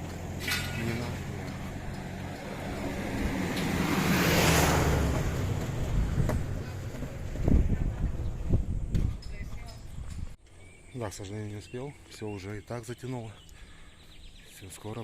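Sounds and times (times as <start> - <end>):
vehicle driving past: 0.0 - 8.4.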